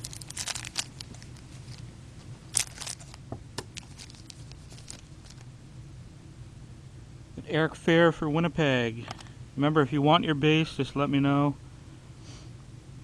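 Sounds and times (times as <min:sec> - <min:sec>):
cards and wrapper rustling: 0:00.0 - 0:01.9, 0:02.5 - 0:05.5.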